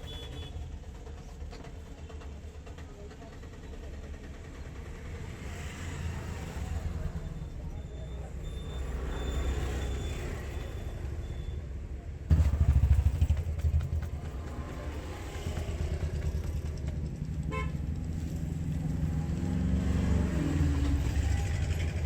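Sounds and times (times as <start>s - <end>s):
road traffic: 0.0s - 22.0s
vehicle engine rumbling: 12.2s - 22.0s.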